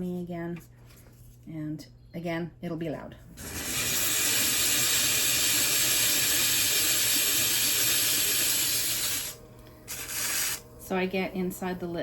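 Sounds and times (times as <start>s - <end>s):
sanding pad rasping on ceramic: 3.4s - 10.6s.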